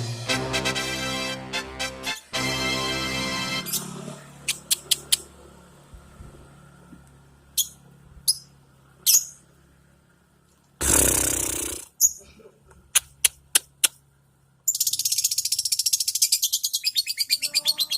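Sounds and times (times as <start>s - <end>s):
lovebird chirping: 7.5s - 9.4s, 14.7s - 17.9s.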